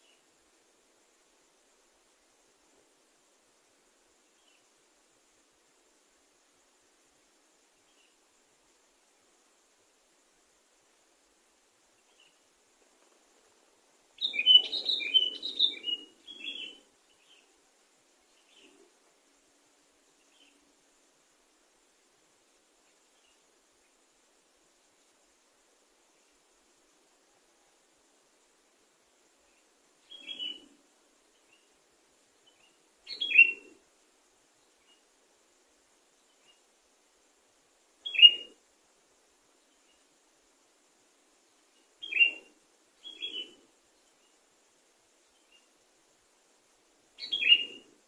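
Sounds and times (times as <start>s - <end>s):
faint bird chirps: 0.0s - 2.8s, 3.6s - 6.8s, 7.5s - 21.2s, 22.8s - 35.2s, 36.0s - 36.8s, 37.9s - 38.7s, 39.4s - 40.2s, 41.4s - 46.0s, 46.7s - 48.0s
bird call phrases: 14.2s - 17.5s, 30.1s - 30.8s, 32.5s - 33.8s, 38.0s - 38.6s, 42.0s - 43.6s, 47.2s - 47.9s
bulbul singing: 14.2s - 17.5s, 30.0s - 30.7s, 32.5s - 33.7s, 38.0s - 38.6s, 42.0s - 43.6s, 47.2s - 47.9s.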